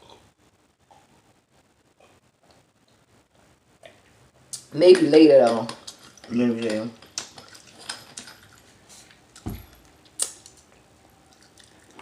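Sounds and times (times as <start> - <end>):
soft low thud: 9.4 - 9.8
lip smacks while chewing: 10.1 - 12.0.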